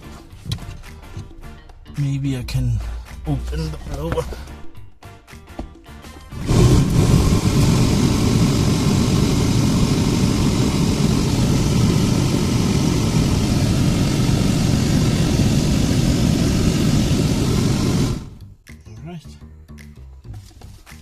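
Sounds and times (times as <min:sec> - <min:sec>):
blower fan air rushing: 0:06.3 - 0:18.4.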